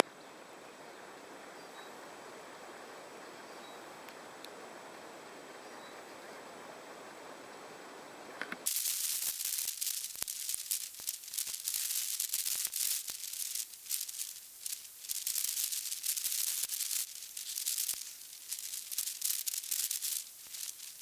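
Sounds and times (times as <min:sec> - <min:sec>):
heavy rain pattering: 0:08.7 - 0:21.0.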